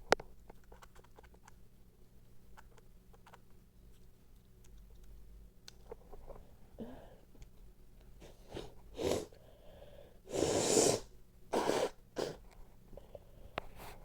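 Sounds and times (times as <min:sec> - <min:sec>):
person breathing: 0:06.3 - 0:07.3, 0:08.2 - 0:12.0
person sneezing: 0:08.2 - 0:09.4, 0:10.3 - 0:12.4.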